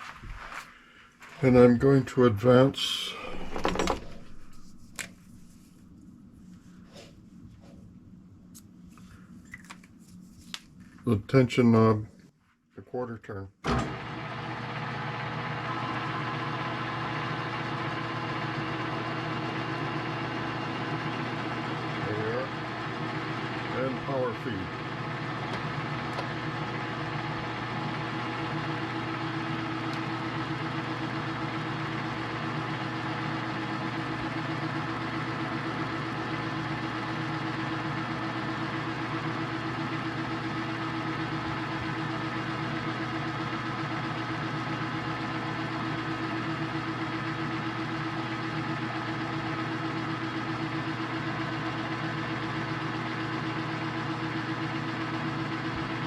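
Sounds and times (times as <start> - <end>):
metal lathe running: 13.7 - 56.0.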